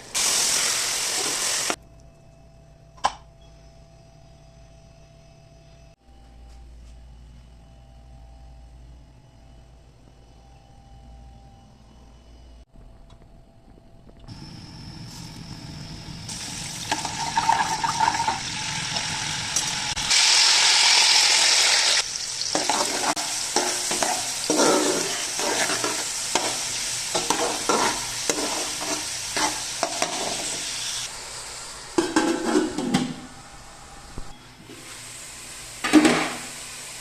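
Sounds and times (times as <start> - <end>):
food sizzling in a pan: 0.0 - 1.8, 16.3 - 32.8, 34.8 - 37.0
spoon stirring and scraping: 22.5 - 30.7.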